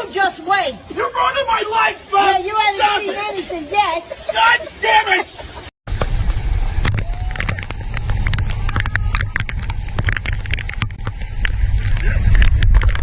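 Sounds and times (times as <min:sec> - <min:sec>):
wind buffeting microphone: 0:05.9 - 0:13.0.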